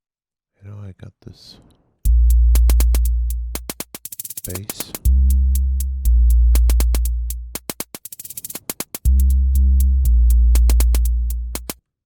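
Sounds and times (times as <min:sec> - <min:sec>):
deep synth bass notes: 0:02.1 - 0:03.6, 0:05.0 - 0:07.6, 0:09.1 - 0:11.6
drum machine clicks: 0:02.1 - 0:11.8.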